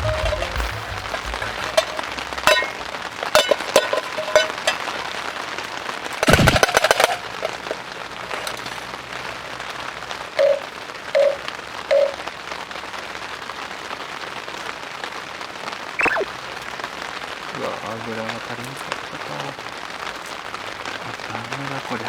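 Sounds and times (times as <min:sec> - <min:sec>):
rapid clicks and cracks: 0:00.0 - 0:09.8
steady rain: 0:00.0 - 0:22.0
brief chirp-like sound: 0:16.0 - 0:16.3.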